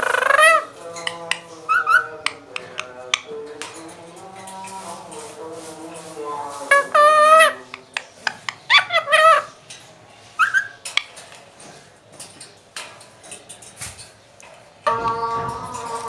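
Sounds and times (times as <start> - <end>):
parakeet calls: 0.0 - 3.7, 6.7 - 9.6, 10.4 - 11.1, 14.9 - 16.0
steady held note: 14.9 - 16.0.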